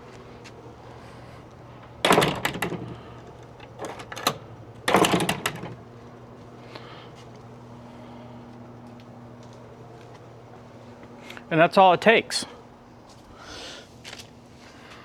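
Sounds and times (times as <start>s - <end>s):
gate latch clattering: 1.7s - 6.0s.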